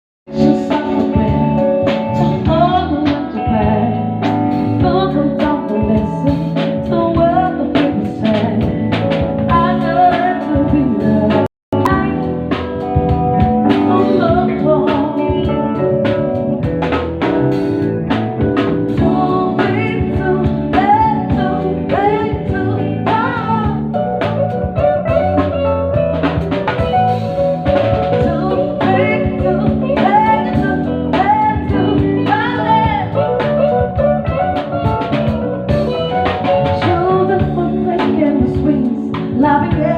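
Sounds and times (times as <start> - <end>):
person singing: 0.3 - 4.2, 9.5 - 16.0, 19.0 - 24.1, 28.1 - 34.5, 36.0 - 39.9
band playing: 0.3 - 39.9.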